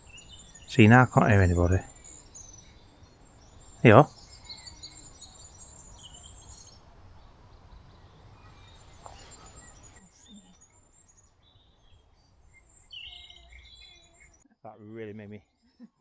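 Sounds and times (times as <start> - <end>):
small birds chirping: 0.0 - 14.4
faint outdoor background noise: 0.0 - 16.0.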